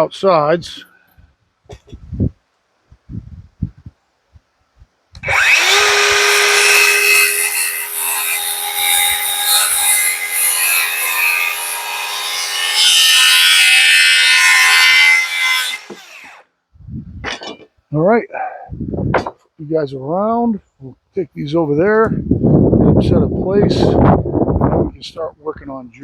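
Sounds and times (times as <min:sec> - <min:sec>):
power saw cutting wood: 0:05.2 - 0:16.4.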